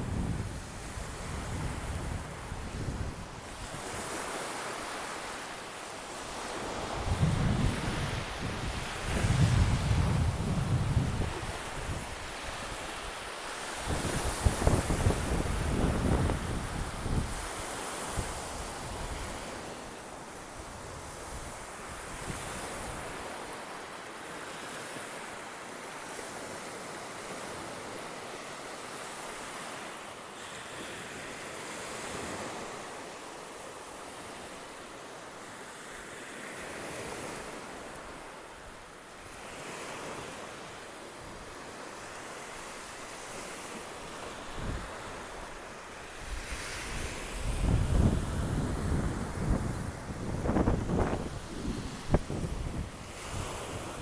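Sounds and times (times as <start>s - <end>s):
waves breaking on beach: 0.0s - 54.0s
wind buffeting microphone: 6.8s - 12.2s, 13.8s - 17.5s, 46.2s - 54.0s.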